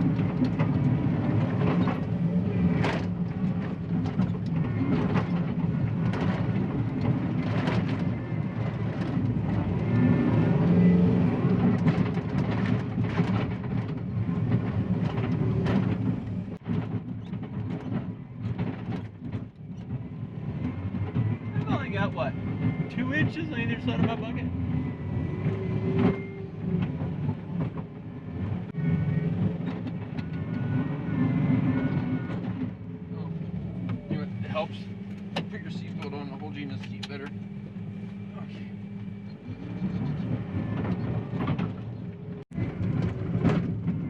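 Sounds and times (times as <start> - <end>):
machine clanks and knocks: 0.0 - 9.9, 11.4 - 28.8
diesel engine running under load: 0.0 - 44.0.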